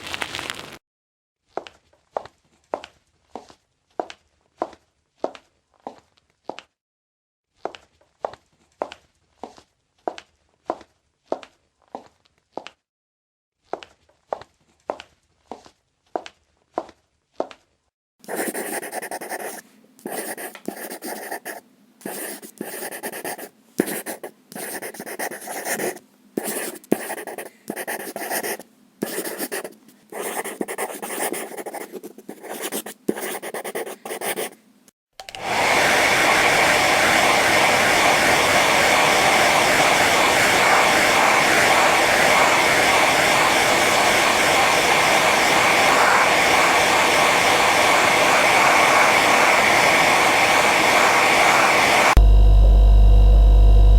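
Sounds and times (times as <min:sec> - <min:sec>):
whirring air from small appliance: 0:35.4 - 0:53.9.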